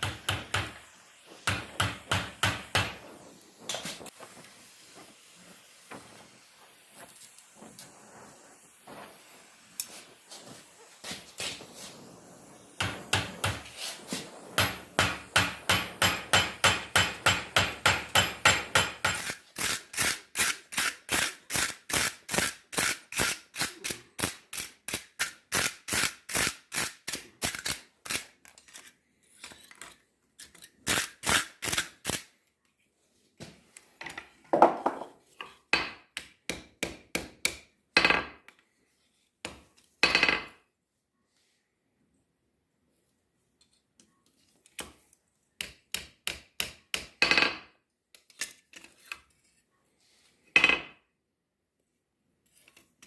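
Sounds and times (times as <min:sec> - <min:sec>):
hammer striking steel on anvil: 0:14.6 - 0:19.3.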